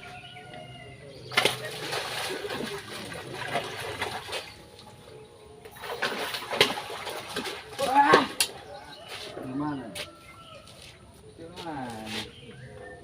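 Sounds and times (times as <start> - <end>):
water splashing and sloshing: 1.1 - 9.5.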